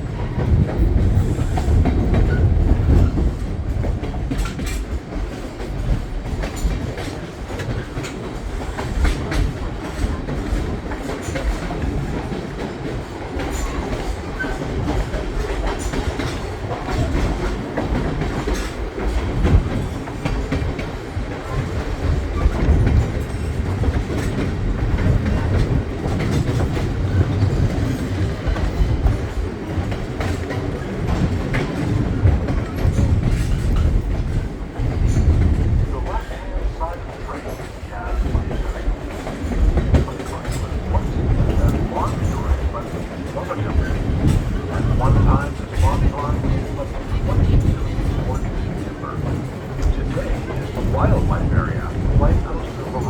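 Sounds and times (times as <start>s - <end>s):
train cars rumbling: 0.0s - 53.0s
wheels clicking on track: 0.1s - 53.0s.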